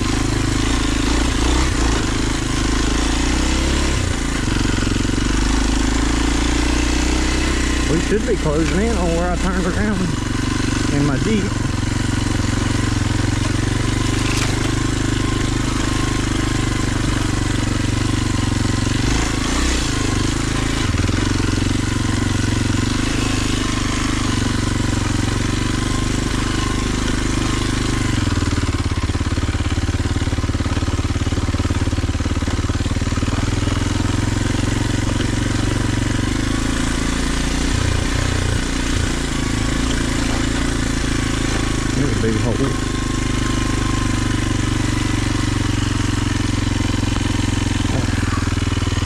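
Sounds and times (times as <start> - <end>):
motorcycle engine running: 0.0 - 49.0
motorcycle knocking over rough ground: 11.8 - 15.8, 28.5 - 36.5, 38.0 - 42.0.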